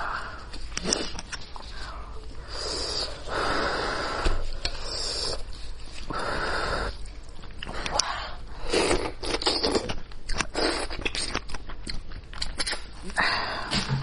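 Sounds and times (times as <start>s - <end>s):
wet chewing and smacking: 8.7s - 13.1s.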